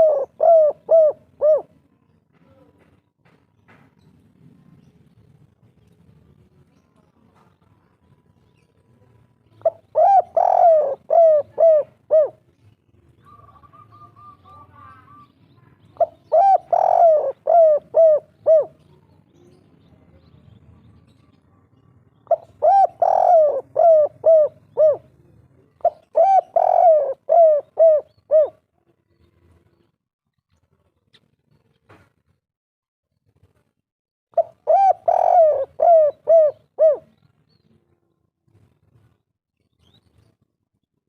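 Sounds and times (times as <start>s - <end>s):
dove cooing: 0.0s - 1.8s, 9.6s - 12.5s, 13.2s - 15.2s, 16.0s - 19.0s, 22.2s - 28.6s, 34.4s - 37.2s.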